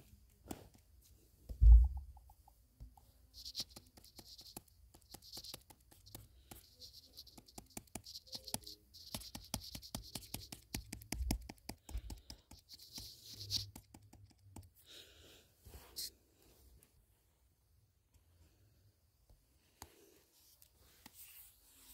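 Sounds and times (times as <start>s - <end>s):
stylus tapping on touchscreen: 1.5s - 14.7s.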